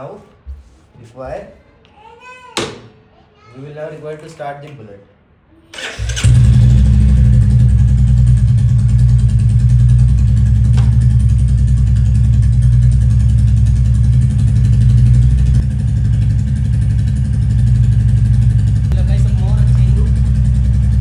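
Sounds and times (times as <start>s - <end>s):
motorcycle engine running: 6.0s - 21.0s.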